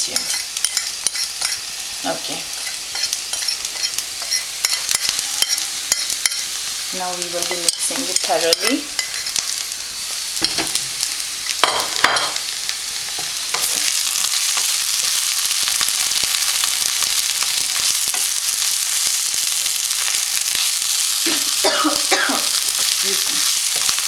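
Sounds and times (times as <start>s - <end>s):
spoon scraping a pan: 0.0s - 6.6s, 7.4s - 10.8s, 13.0s - 15.4s
okra sizzling in a pan: 0.0s - 24.0s.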